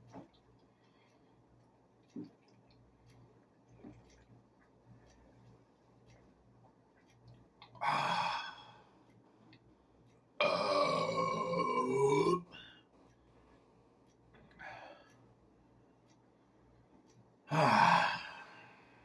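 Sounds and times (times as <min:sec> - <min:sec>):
person burping: 0:10.4 - 0:12.6, 0:17.5 - 0:18.4.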